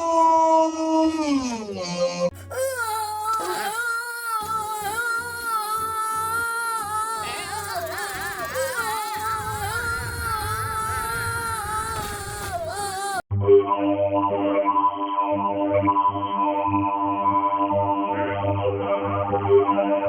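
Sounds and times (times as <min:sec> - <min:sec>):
effected wavering moan: 0:02.2 - 0:13.2
low buzz: 0:02.4 - 0:13.2.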